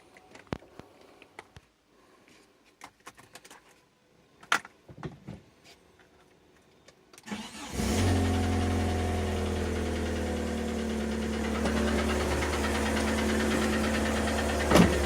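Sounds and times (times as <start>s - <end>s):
car engine cranking and running: 7.3s - 15.0s.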